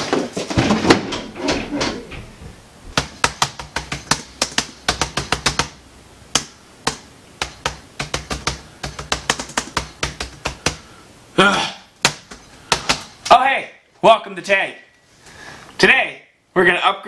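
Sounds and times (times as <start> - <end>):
sharp irregular clicking: 3.0 - 10.8.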